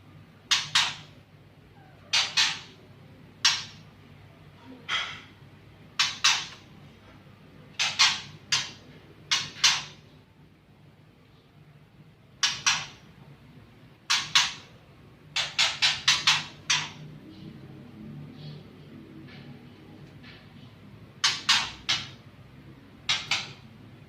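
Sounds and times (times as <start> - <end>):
songbirds harsh calls: 0.5 - 1.2, 6.0 - 6.6, 7.8 - 10.0, 14.1 - 17.0.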